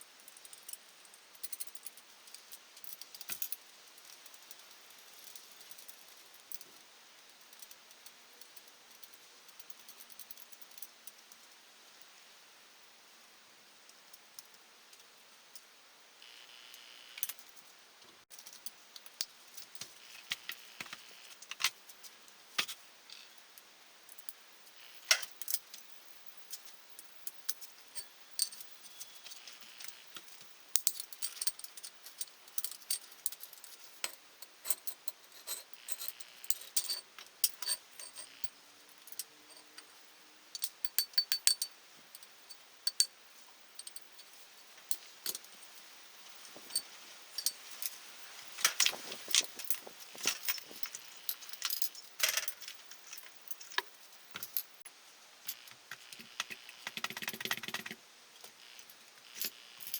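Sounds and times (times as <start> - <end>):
metal parts and tools clinking: 27.5 - 39.8, 40.6 - 43.1, 46.4 - 54.8.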